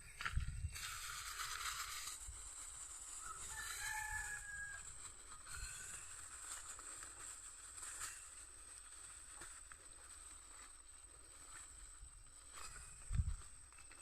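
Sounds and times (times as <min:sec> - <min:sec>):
steady high-pitched hiss: 0:00.0 - 0:14.0
rooster crowing faintly: 0:03.1 - 0:06.1.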